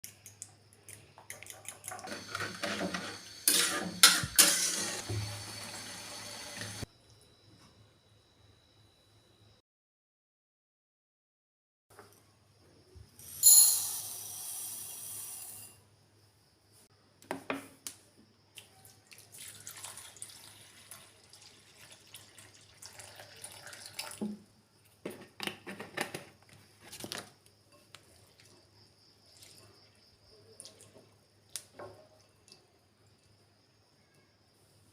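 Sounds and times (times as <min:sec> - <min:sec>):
splashes and drips: 0:18.6 - 0:24.3.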